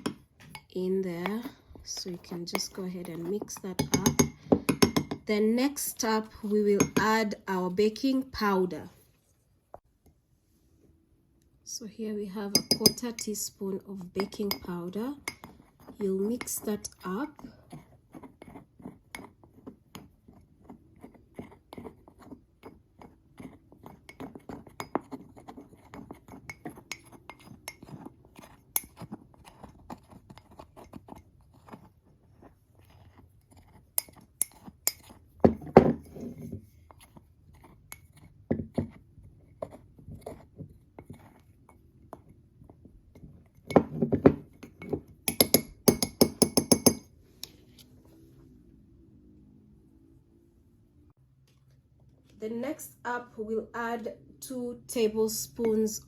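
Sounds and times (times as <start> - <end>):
spoon clinking and scraping in mug: 0.0 - 5.3, 6.4 - 7.2, 12.5 - 20.4, 21.0 - 38.3, 43.1 - 47.6.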